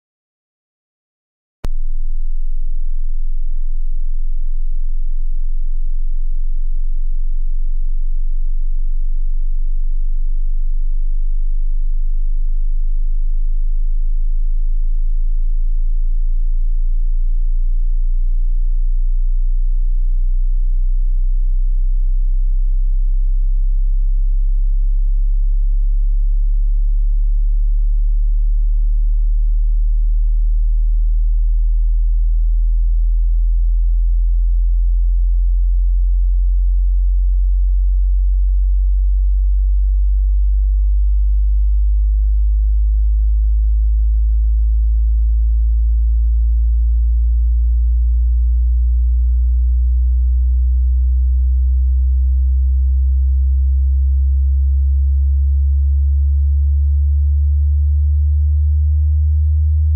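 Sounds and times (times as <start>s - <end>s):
sine tone rising in pitch: 37.6s - 59.9s.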